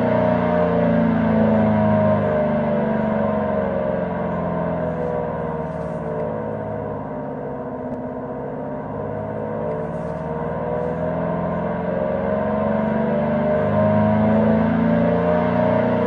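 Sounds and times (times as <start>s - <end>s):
droning alarm tone: 0.0s - 16.0s.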